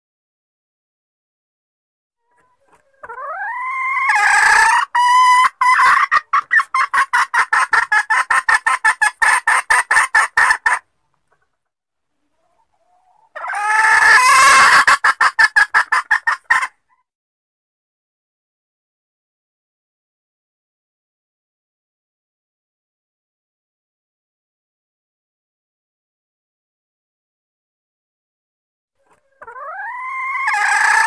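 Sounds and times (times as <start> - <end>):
junglefowl hen clucking: 2.2 - 11.6, 12.2 - 17.1, 29.0 - 31.0.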